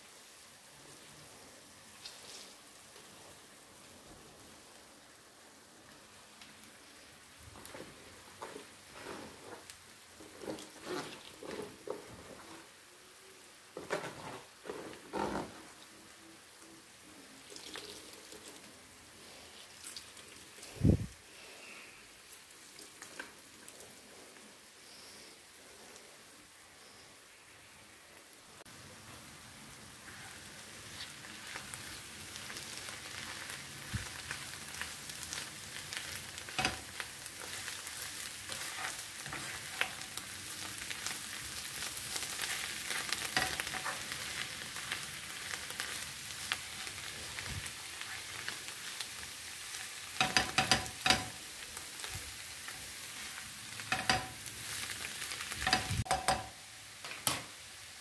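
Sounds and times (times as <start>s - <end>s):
food sizzling in a pan: 0.0s - 58.0s
utensil knocking against pan: 50.2s - 51.3s, 55.7s - 56.5s.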